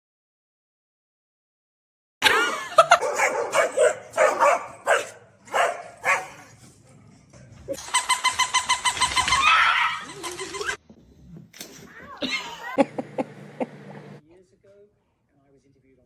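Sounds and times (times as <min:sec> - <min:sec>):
dog barking: 0:02.9 - 0:06.5.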